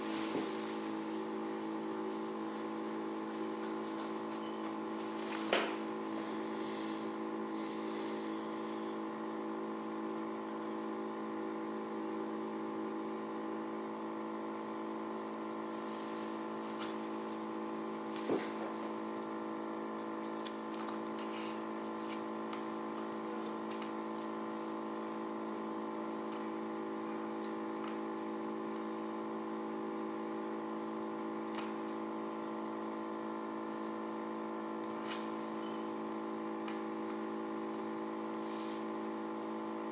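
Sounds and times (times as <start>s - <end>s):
magnetic stirrer whirring hum: 0.0s - 39.9s.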